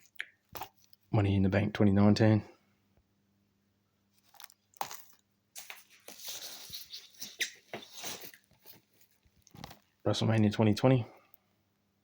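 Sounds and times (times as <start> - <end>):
packaging rustling and crinkling: 4.2 - 10.0.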